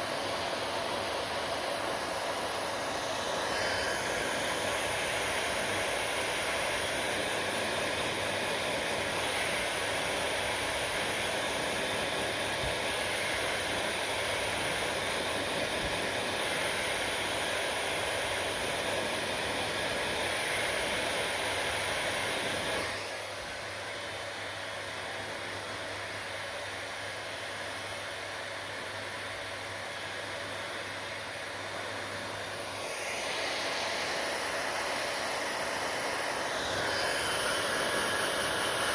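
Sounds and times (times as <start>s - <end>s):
hair dryer blowing: 0.0s - 38.9s.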